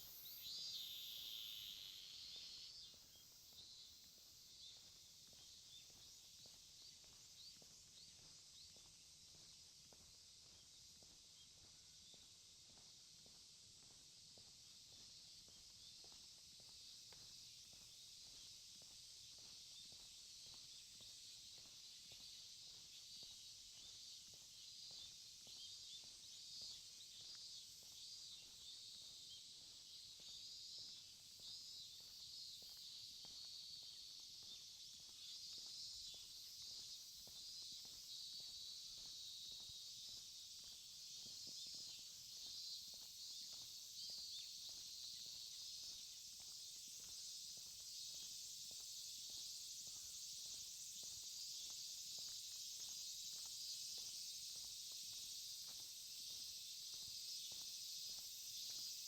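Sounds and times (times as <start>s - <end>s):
insects chirring: 0.0s - 59.0s
soft footsteps: 2.4s - 59.0s.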